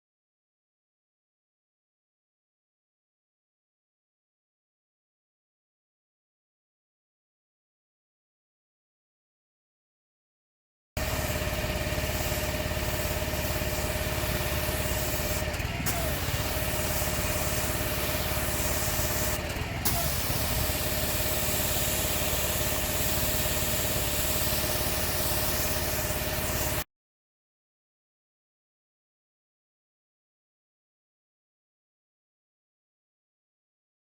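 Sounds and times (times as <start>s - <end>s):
pressure washer engine running: 11.0s - 26.8s
spray lance hissing: 11.0s - 26.8s.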